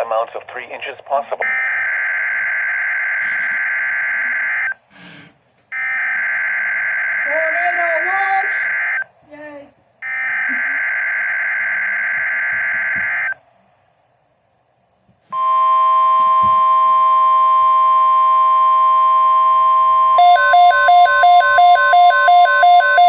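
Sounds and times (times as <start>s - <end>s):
fast repeating alarm beeps: 1.4s - 4.7s, 20.2s - 23.0s
steady warning alarm tone: 1.4s - 4.8s, 5.8s - 9.0s, 10.0s - 13.4s, 15.4s - 23.0s.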